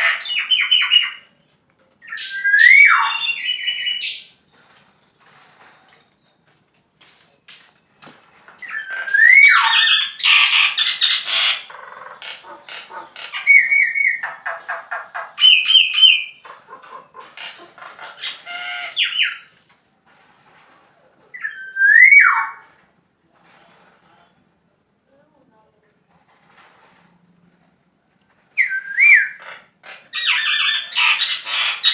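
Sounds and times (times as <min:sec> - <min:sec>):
bird whistling song: 0:02.0 - 0:04.4, 0:08.6 - 0:11.5, 0:15.4 - 0:16.4, 0:21.4 - 0:22.6, 0:28.6 - 0:29.4
bird harsh chattering notes: 0:08.6 - 0:19.5.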